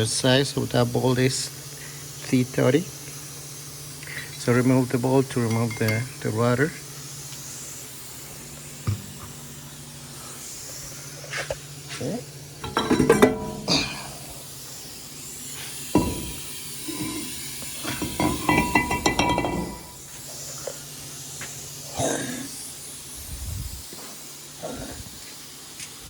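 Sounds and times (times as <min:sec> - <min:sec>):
steady hiss: 0:00.0 - 0:26.0
tools clinking on metal: 0:05.4 - 0:06.1, 0:12.6 - 0:13.9, 0:17.9 - 0:20.0
metal knocks: 0:12.6 - 0:13.7, 0:16.0 - 0:17.2, 0:18.0 - 0:20.0.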